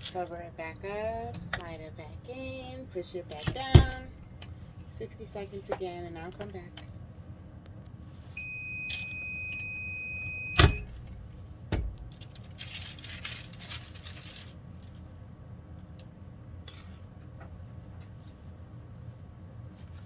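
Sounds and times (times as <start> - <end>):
long high timer beep: 8.4 - 10.9
rustling: 12.1 - 15.1.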